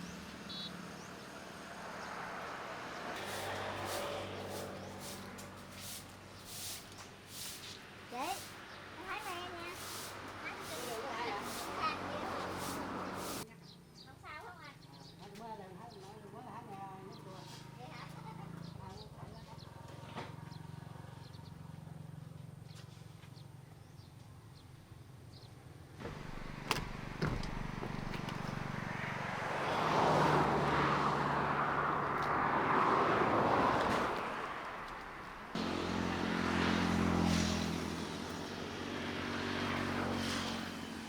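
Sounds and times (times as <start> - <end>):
small engine running: 8.2 - 13.4, 26.0 - 30.9, 35.6 - 41.0.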